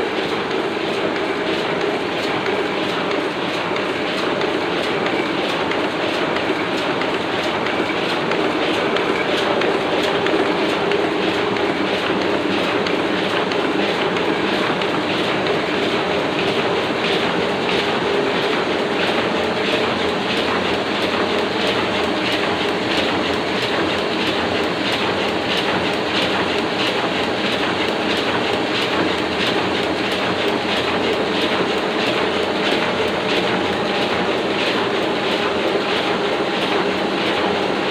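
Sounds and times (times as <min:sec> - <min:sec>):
printing press clattering: 0:00.0 - 0:37.9.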